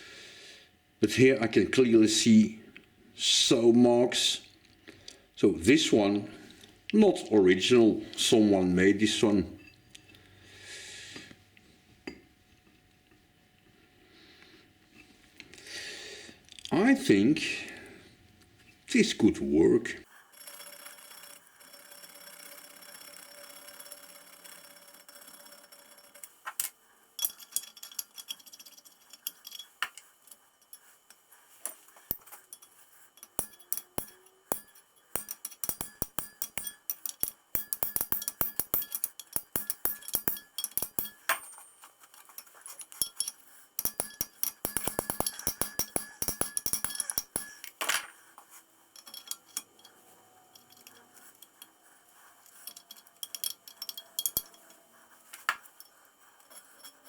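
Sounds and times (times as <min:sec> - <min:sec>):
metallic tapping on steel pin: 0:32.1 - 0:41.7, 0:42.9 - 0:47.8, 0:52.7 - 0:54.6.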